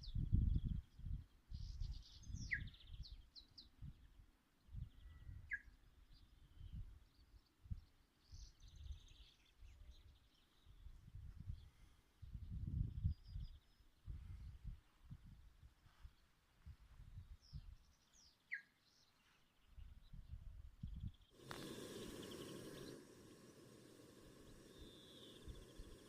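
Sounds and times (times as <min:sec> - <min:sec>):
small birds chirping: 0:00.0 - 0:14.7, 0:17.1 - 0:26.0
low rumbling on microphone: 0:20.3 - 0:26.0.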